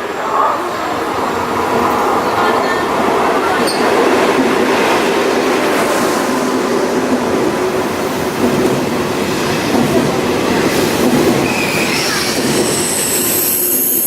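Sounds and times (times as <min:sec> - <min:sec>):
train wheels rumbling on rails: 0:00.0 - 0:14.0
high-pitched brake squeal: 0:11.4 - 0:14.0.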